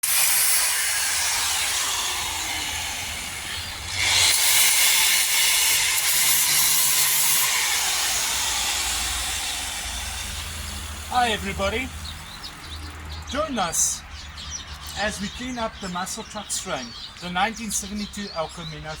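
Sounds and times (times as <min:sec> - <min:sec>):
loud steady hissing: 0:00.0 - 0:12.3.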